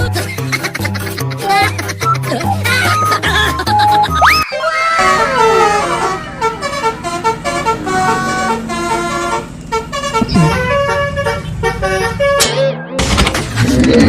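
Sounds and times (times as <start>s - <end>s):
bus horn playing a melody: 5.0s - 12.5s.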